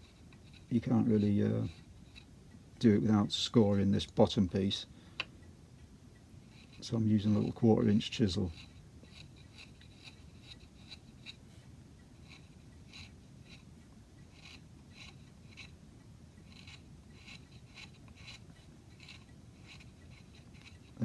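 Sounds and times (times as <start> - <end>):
chisel scraping wood: 0.0 - 2.3, 6.5 - 11.4, 12.2 - 13.7, 14.3 - 15.8, 16.4 - 21.0.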